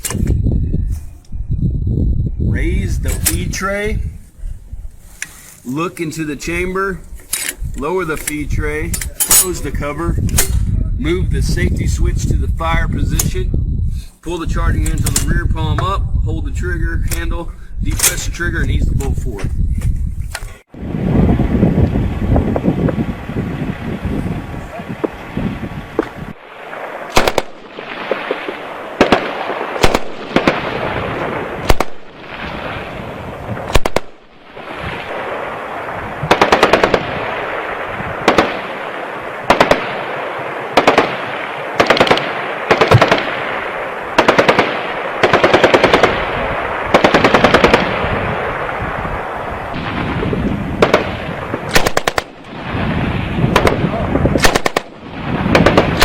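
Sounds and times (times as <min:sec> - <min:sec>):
gunfire echoing: 0:26.4 - 0:49.0, 0:49.7 - 0:56.0.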